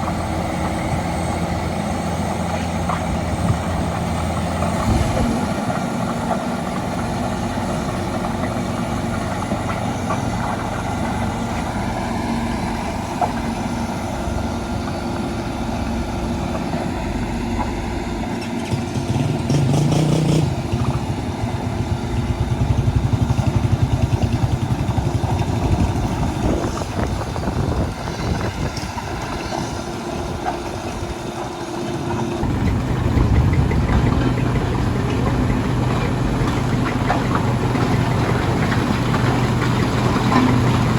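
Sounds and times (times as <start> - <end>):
diesel machinery engines running: 0.0 - 40.9.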